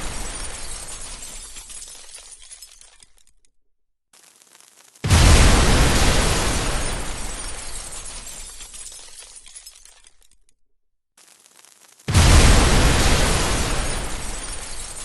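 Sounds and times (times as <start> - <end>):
crackling debris: 0.0 - 3.5, 4.1 - 10.5, 11.2 - 15.0
explosion deep rumble: 12.1 - 14.3.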